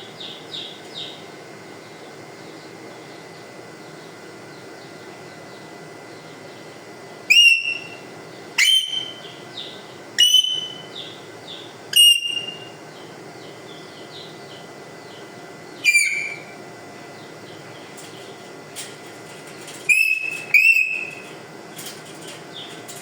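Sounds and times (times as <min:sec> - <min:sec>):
parrot whistling: 0:08.6 - 0:09.2, 0:10.2 - 0:10.8, 0:11.9 - 0:12.7, 0:15.8 - 0:16.5, 0:19.9 - 0:21.2.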